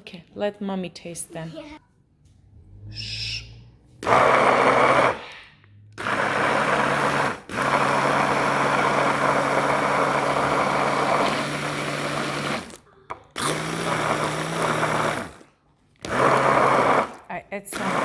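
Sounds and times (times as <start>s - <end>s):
electric blender running: 4.0s - 12.8s, 13.4s - 18.0s.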